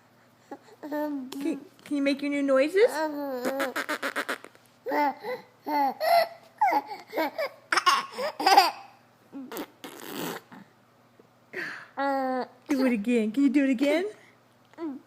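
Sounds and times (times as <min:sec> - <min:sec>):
baby laughing and babbling: 0:00.5 - 0:01.7, 0:02.8 - 0:10.7, 0:12.0 - 0:12.9
baby breathy noises: 0:03.0 - 0:08.4.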